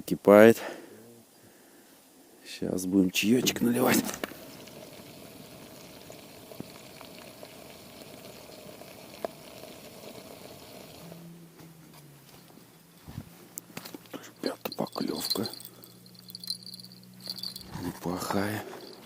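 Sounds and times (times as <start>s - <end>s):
kettle boiling: 3.9s - 11.2s.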